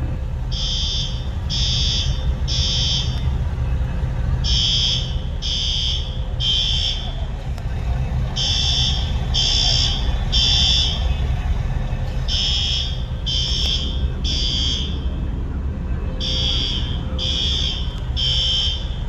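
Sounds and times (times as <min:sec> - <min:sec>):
steady low rumble: 0:00.0 - 0:19.0
fire alarm high beeps: 0:00.5 - 0:03.2, 0:04.4 - 0:07.2, 0:12.3 - 0:15.1, 0:16.2 - 0:19.0.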